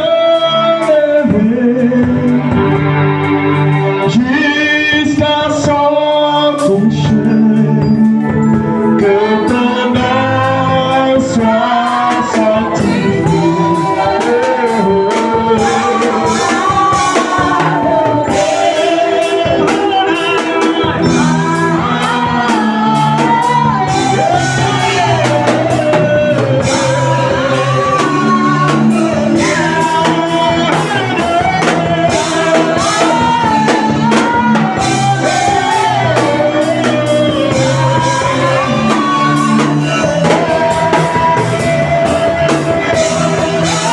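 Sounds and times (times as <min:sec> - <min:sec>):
band with bass and drums: 0:00.0 - 0:43.9
gospel singing: 0:00.0 - 0:43.9.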